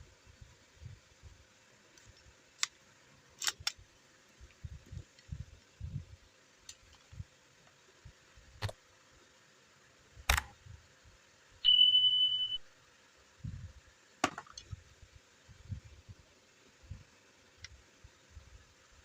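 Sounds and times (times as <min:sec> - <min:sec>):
sharp clicks: 0:03.4 - 0:03.8, 0:10.3 - 0:10.6
high-pitched electronic beep: 0:11.6 - 0:12.6.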